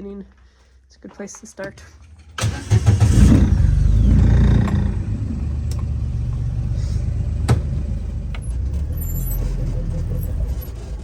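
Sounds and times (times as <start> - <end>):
vehicle engine humming: 2.6 - 11.0.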